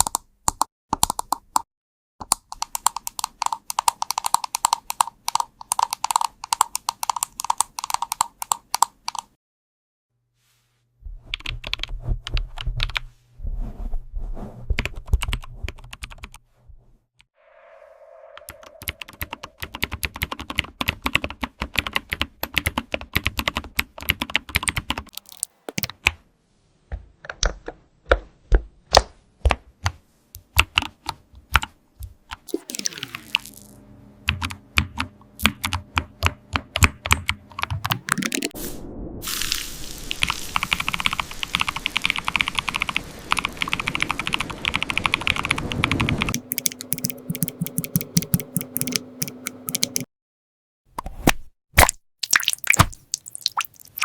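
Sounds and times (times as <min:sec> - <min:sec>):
computer keyboard typing: 0:02.2 - 0:09.3, 0:18.8 - 0:25.9, 0:40.7 - 0:50.1.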